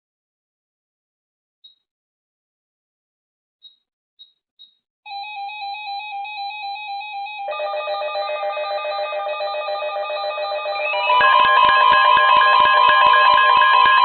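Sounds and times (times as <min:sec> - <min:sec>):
electronic alert tones pulsing: 0:07.5 - 0:14.0.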